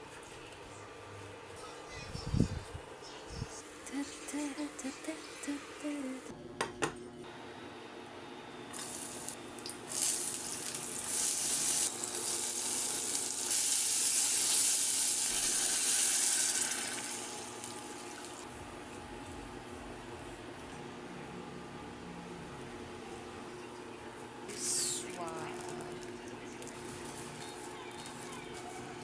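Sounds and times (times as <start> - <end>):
water running from tap into sink: 8.8 - 18.4.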